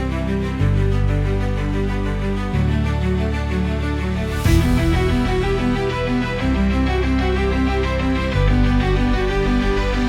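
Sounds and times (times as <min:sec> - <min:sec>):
instrumental music with sustained chords: 0:00.0 - 0:10.0
bass line: 0:04.1 - 0:10.0.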